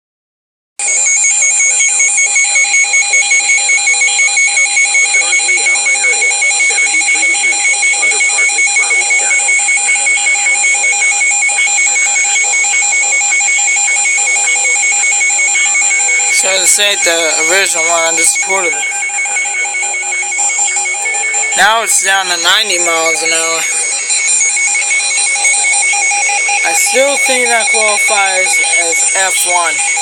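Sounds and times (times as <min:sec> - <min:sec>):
shrill electronic alarm beeping: 0:00.8 - 0:30.0
faint voice: 0:05.0 - 0:11.0, 0:15.8 - 0:26.0.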